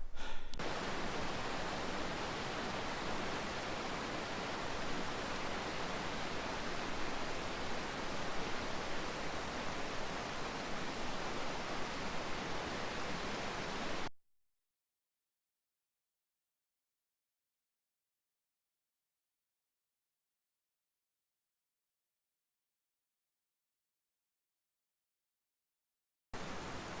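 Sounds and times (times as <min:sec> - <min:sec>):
waterfall rushing: 0:00.6 - 0:14.1, 0:26.4 - 0:27.0.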